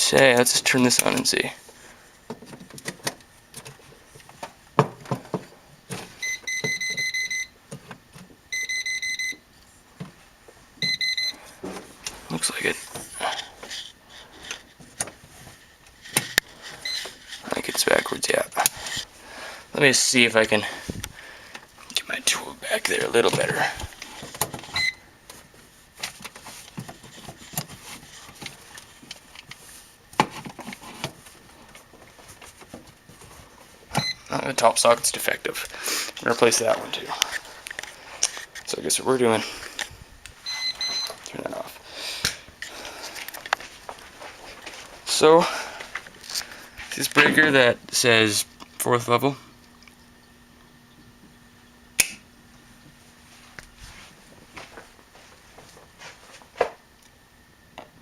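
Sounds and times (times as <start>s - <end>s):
voltage tester rapid beeps: 6.2s - 7.5s, 8.5s - 9.4s, 10.8s - 11.4s
short beep: 10.8s - 11.4s.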